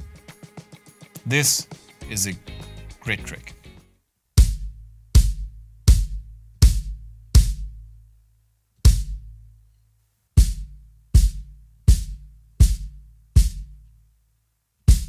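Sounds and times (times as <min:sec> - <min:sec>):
soft bass drum kicks: 0:04.4 - 0:07.8, 0:08.8 - 0:09.4, 0:10.4 - 0:13.8.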